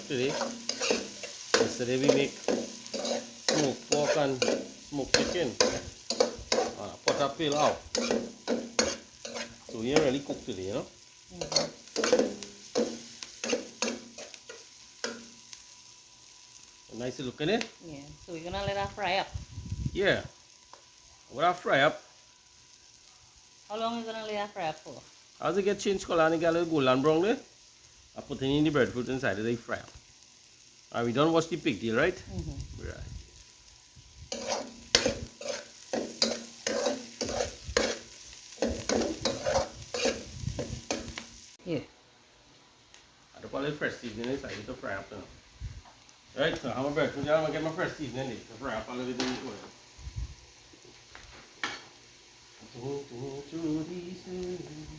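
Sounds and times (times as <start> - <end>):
spoon stirring and scraping pot: 0.0 - 10.4, 11.4 - 15.2, 34.3 - 41.2
food sizzling in hot oil: 0.0 - 54.9.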